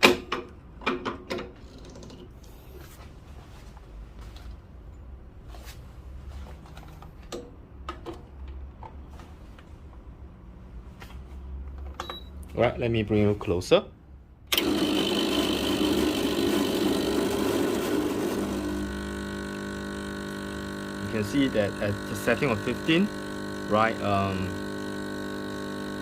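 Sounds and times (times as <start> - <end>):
portafilter clicks and knocks: 0.0 - 2.0
espresso machine pump humming: 14.5 - 26.0.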